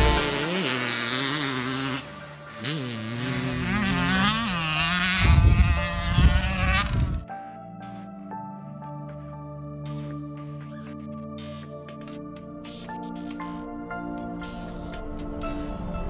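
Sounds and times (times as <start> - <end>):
dirt bike engine revving: 0.0 - 7.2
soft ambient music: 0.0 - 16.0.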